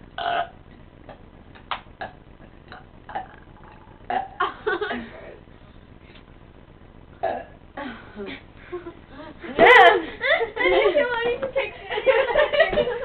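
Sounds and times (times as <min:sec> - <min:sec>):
person burping: 0:00.2 - 0:01.2, 0:02.0 - 0:04.4, 0:07.2 - 0:07.6.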